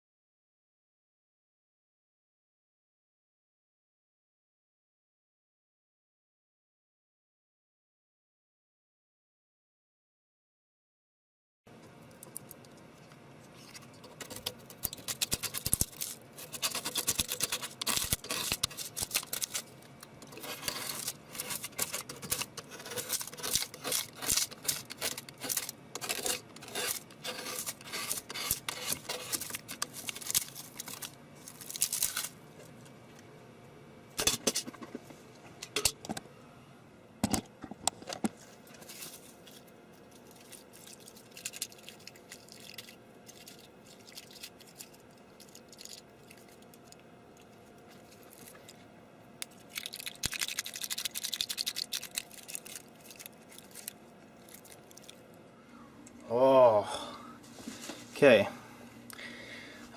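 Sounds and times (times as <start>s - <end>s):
plastic parts clicking and rattling: 13.6s - 32.3s, 49.4s - 54.0s.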